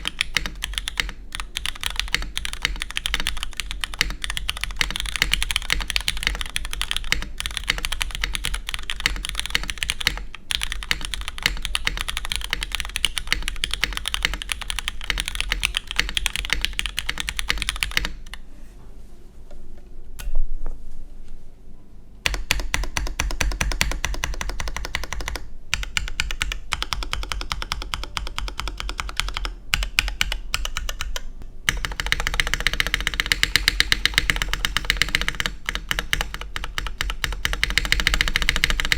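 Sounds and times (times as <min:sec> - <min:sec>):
fast keyboard typing: 0:00.0 - 0:18.4, 0:22.3 - 0:38.9
keystroke clacks: 0:00.0 - 0:18.4, 0:22.3 - 0:38.9.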